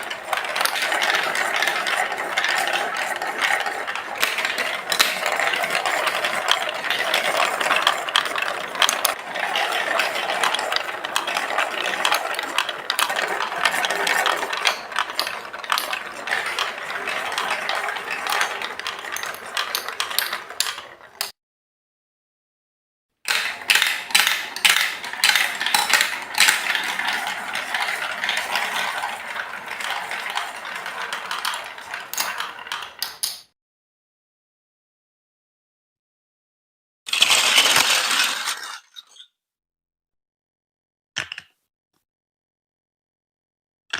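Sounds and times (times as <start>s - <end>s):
marbles rattling down plastic track: 0.0s - 21.4s, 23.3s - 33.4s, 37.1s - 38.9s.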